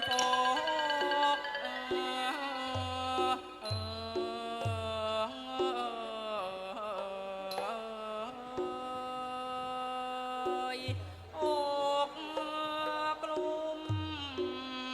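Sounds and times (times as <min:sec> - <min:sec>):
ensemble melody bending in pitch: 0:00.0 - 0:03.7.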